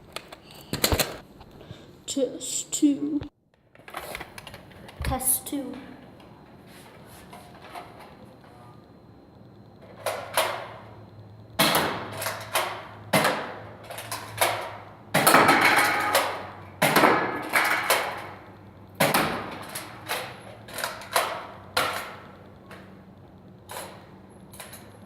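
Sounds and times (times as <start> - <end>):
darts striking cans: 11.6 - 13.6, 14.4 - 18.4, 19.0 - 20.1
cans clattering over: 12.0 - 18.4.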